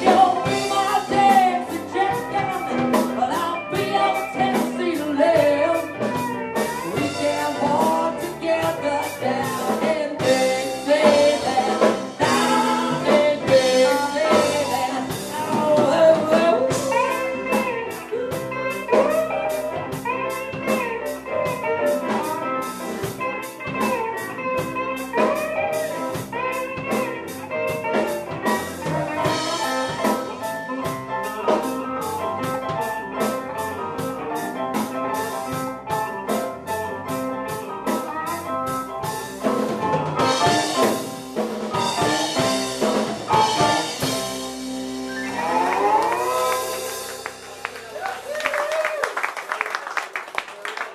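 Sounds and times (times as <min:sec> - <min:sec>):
person singing: 0:00.0 - 0:20.6, 0:27.9 - 0:31.0, 0:41.7 - 0:44.2
drum kit beat: 0:00.0 - 0:48.9
electric guitar: 0:00.0 - 0:49.2.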